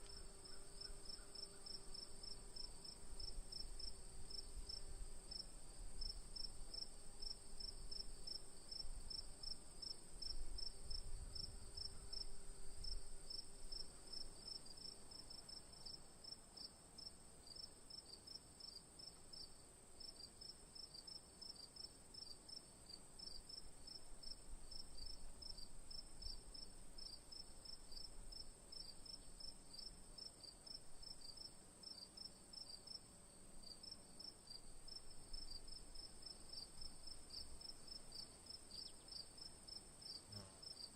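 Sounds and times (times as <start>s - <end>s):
crickets chirping: 0.0s - 16.7s, 17.5s - 40.9s.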